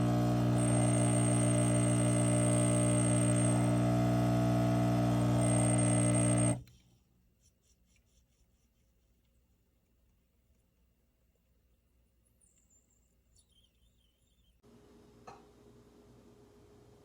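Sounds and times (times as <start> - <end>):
espresso machine pump buzzing: 0.0 - 6.6.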